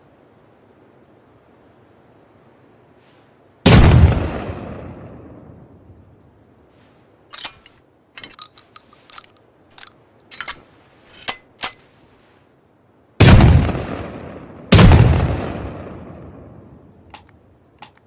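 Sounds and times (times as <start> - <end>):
loud echoing gunshot: 3.7 - 5.4, 13.2 - 16.5
gun handling clicks: 7.3 - 11.9, 17.1 - 18.0.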